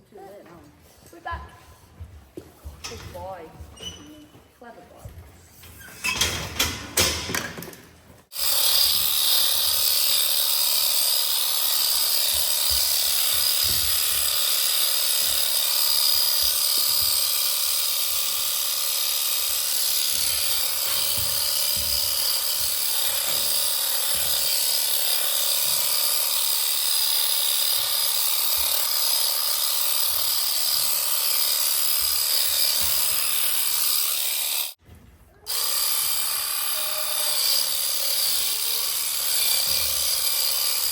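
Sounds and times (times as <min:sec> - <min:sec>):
electric sheep shears buzzing: 0:08.3 - 0:34.8, 0:35.5 - 0:40.9.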